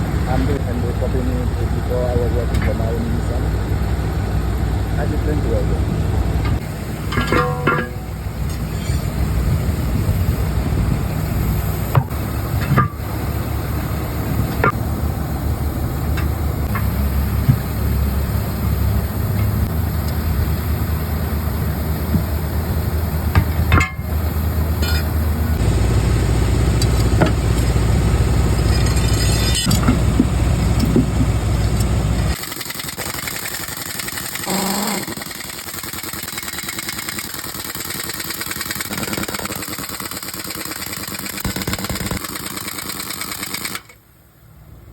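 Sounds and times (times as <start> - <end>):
truck engine running: 0.0 - 44.9
sharp metallic knocks: 6.5 - 9.2, 11.9 - 13.1, 23.3 - 24.2.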